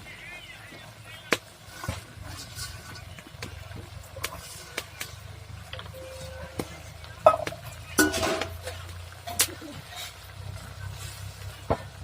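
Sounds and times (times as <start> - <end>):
utensils clinking against a pot: 1.8 - 3.5, 5.8 - 11.2.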